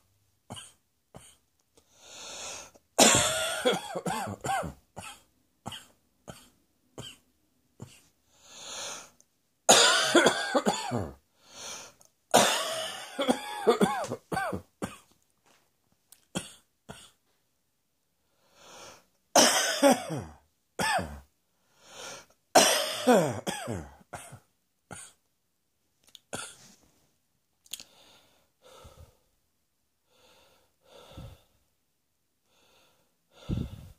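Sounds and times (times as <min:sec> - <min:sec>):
drawn breaths: 0:01.8 - 0:02.8, 0:08.3 - 0:09.2, 0:11.3 - 0:12.0, 0:21.6 - 0:22.4, 0:30.1 - 0:31.6, 0:32.5 - 0:33.9
person coughing harshly: 0:03.0 - 0:07.2, 0:09.7 - 0:11.2, 0:12.3 - 0:15.1, 0:19.4 - 0:21.3, 0:22.6 - 0:25.2, 0:26.3 - 0:26.7.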